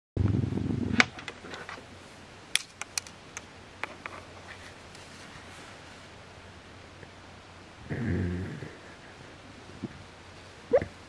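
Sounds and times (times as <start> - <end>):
low room noise: 0.2 - 11.0
dog snoring: 7.8 - 8.8.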